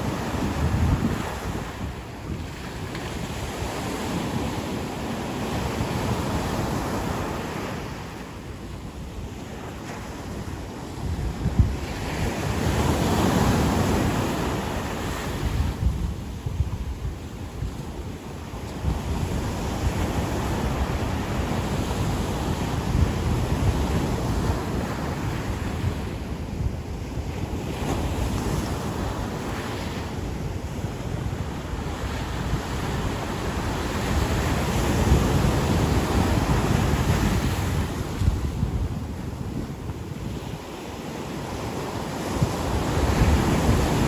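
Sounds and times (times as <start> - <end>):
ocean surf on beach: 0.0 - 44.0
wind buffeting microphone: 0.0 - 44.0.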